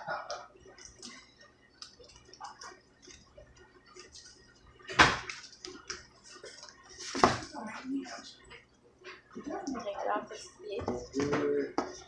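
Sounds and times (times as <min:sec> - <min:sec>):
slime squelching while stirred: 0:00.3 - 0:08.2.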